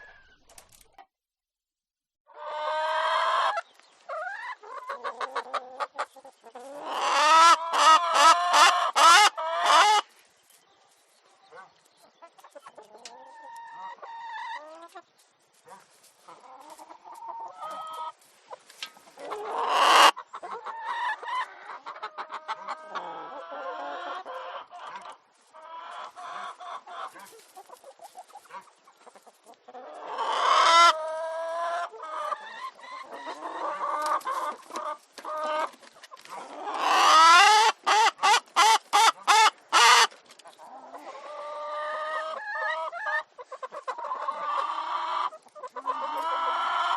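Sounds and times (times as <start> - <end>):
sharp chicken cackles: 2.3 - 10.0, 19.2 - 46.9
chickens clucking and calling: 2.3 - 46.9.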